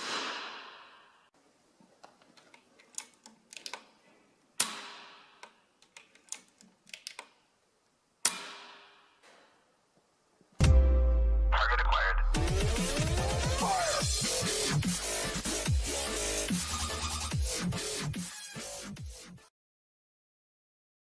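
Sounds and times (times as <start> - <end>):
air rifle shots: 0.0 - 1.1
rifle reloading clicks: 2.4 - 3.9.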